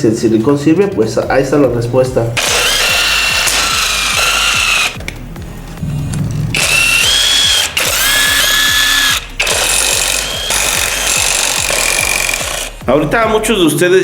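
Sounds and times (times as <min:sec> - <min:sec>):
power drill whining: 0:02.4 - 0:05.0, 0:06.5 - 0:12.8.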